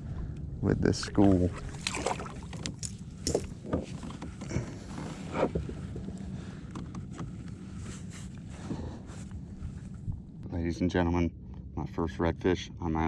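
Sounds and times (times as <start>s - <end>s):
water splashes: 0.9s - 3.5s.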